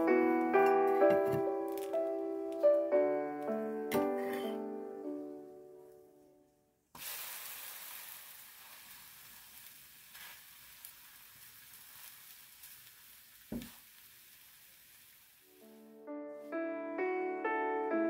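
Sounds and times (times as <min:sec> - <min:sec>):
batter sizzling in a pan: 0:06.9 - 0:15.8.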